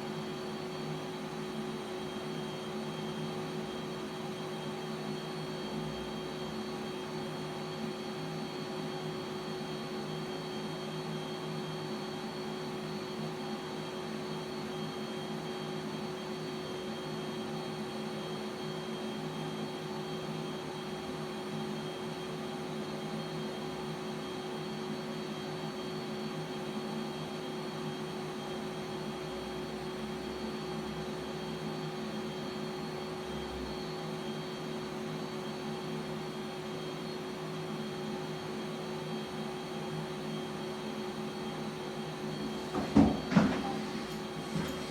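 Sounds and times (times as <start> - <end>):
milling machine hum and hiss: 0.0 - 44.9
milling machine whine: 35.2 - 44.9.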